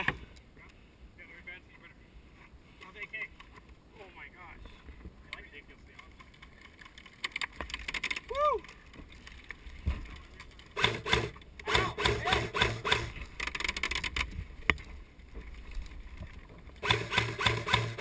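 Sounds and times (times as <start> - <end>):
airsoft rifles firing full auto: 10.8 - 14.1, 16.8 - 18.0.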